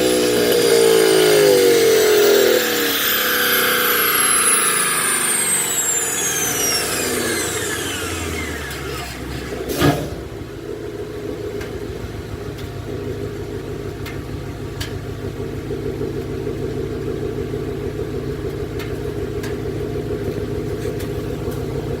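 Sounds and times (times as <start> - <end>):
car engine revving and idling: 0.0 - 22.0.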